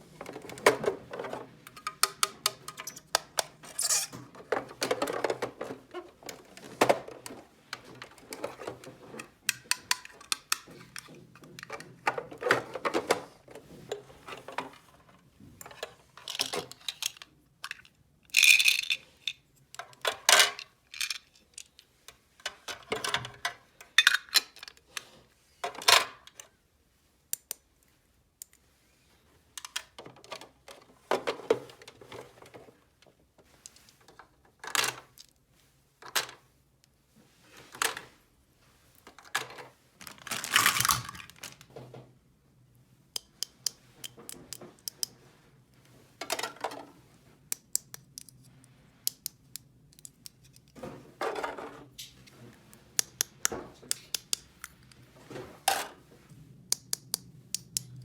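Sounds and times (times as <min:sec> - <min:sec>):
plastic toy pieces clicking: 0:09.5 - 0:10.7, 0:16.3 - 0:19.3, 0:49.1 - 0:50.7, 0:53.0 - 0:54.5.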